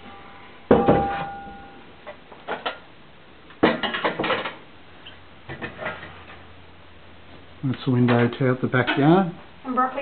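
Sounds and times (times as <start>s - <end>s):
kitchenware clattering: 3.6s - 4.6s.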